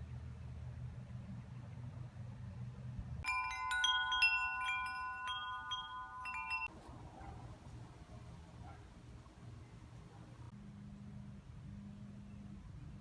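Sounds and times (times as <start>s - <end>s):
metal wind chimes ringing: 3.2s - 6.7s.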